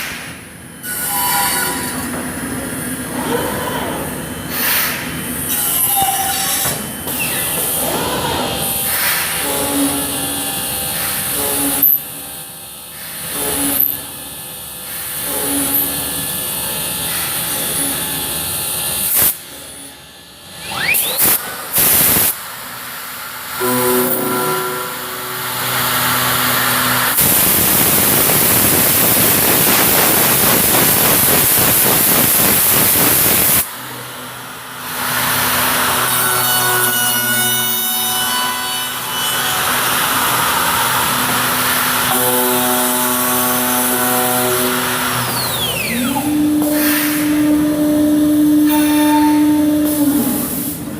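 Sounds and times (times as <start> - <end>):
machine hum: 0.0 - 50.9
loud hissing: 25.8 - 33.6.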